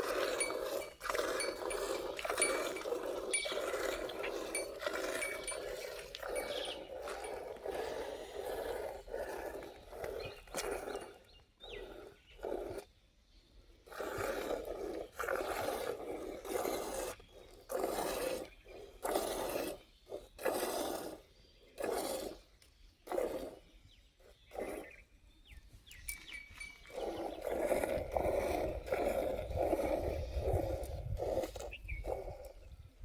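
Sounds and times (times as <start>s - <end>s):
milk squirting into pail: 0.0s - 8.4s.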